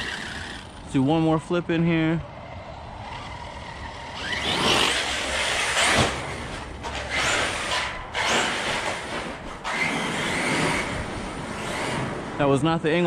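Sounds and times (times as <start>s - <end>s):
electric motor whining: 0.0s - 0.9s, 2.9s - 12.4s
tyres churning dirt: 0.0s - 13.0s.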